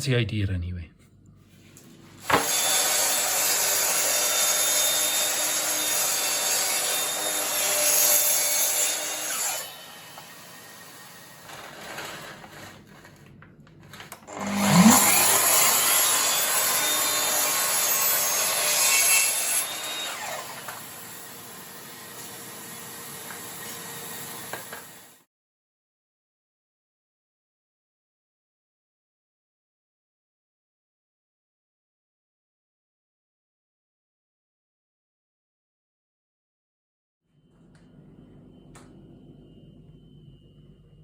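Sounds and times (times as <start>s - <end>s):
power saw cutting wood: 2.2s - 13.0s, 14.3s - 25.2s.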